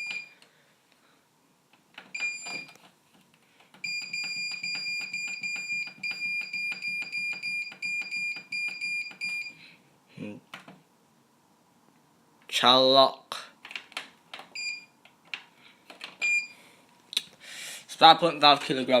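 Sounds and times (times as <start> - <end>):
washing machine beeps: 0.0 - 0.4, 2.1 - 2.7, 3.8 - 9.6, 14.6 - 15.0, 16.2 - 16.6.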